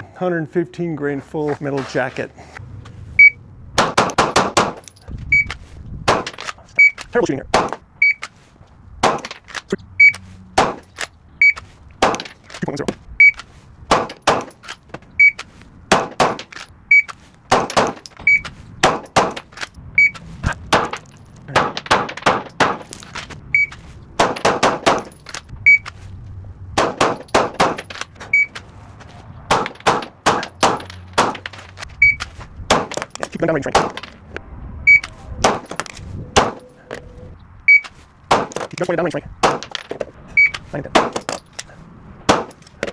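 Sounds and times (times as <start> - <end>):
pistol shots: 3.2 - 5.1, 6.0 - 7.9, 9.0 - 9.7, 10.6 - 11.1, 12.0 - 14.8, 15.9 - 16.7, 17.5 - 19.8, 20.4 - 26.0, 26.8 - 28.7, 29.4 - 34.3, 34.9 - 37.2, 38.3 - 42.9.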